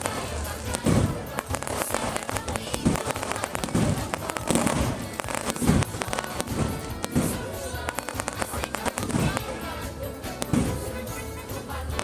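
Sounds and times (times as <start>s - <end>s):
bonfire crackling and popping: 0.0s - 12.0s
deep thuds: 0.0s - 12.0s.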